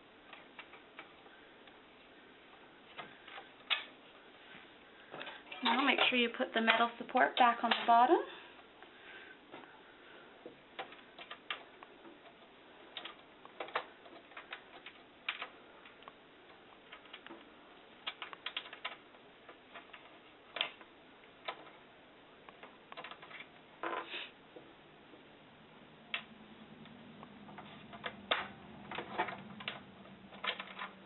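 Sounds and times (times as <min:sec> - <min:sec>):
projector parts clicking and knocking: 0:02.5 - 0:04.0, 0:05.1 - 0:08.2, 0:10.4 - 0:24.0, 0:27.2 - 0:31.0.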